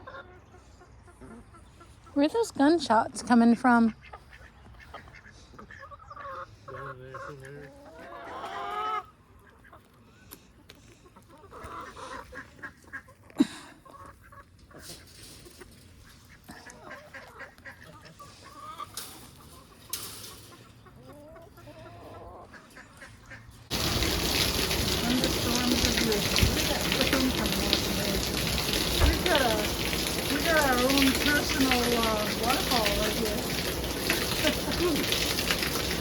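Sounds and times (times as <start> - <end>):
chickens clucking: 0.0 - 2.2, 3.8 - 36.0
heavy rain: 23.7 - 36.0.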